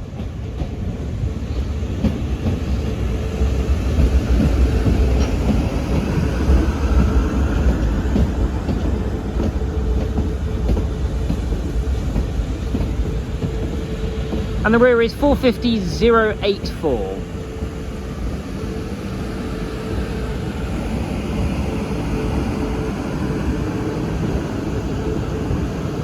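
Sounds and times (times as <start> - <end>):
electric train rumbling on rails: 0.0 - 26.0.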